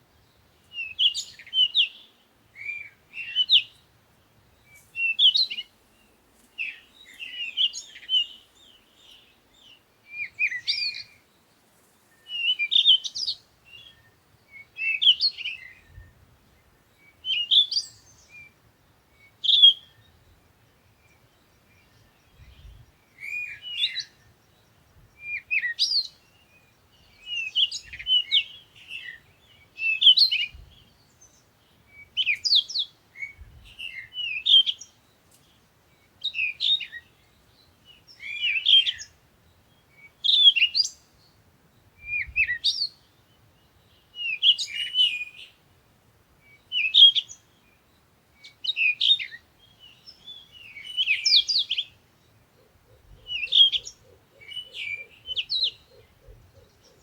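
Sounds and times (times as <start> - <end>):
birds chirping: 46.4 - 57.0.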